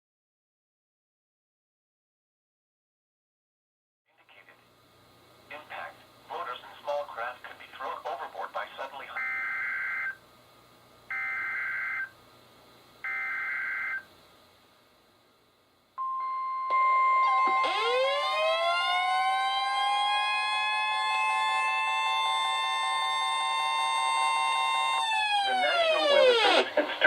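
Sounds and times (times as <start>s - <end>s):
pulsing alarm beep: 9.2s - 10.2s, 11.1s - 12.1s, 13.1s - 14.1s, 16.0s - 24.8s
siren winding up in pitch: 9.2s - 10.2s, 11.1s - 12.1s, 13.1s - 14.1s, 16.0s - 26.8s.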